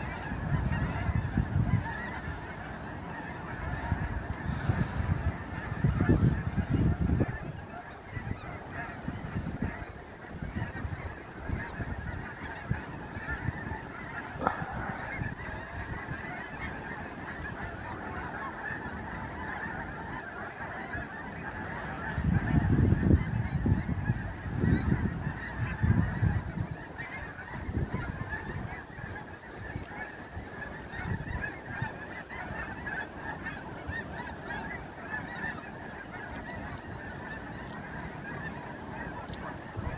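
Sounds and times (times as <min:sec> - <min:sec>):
flock of geese honking: 0:00.0 - 0:39.9
low rumbling gusts: 0:10.5 - 0:17.6.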